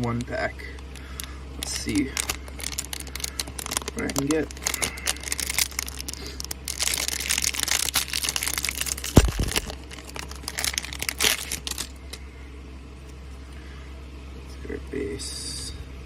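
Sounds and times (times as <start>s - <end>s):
wrapper tearing and crinkling: 0.8s - 12.0s.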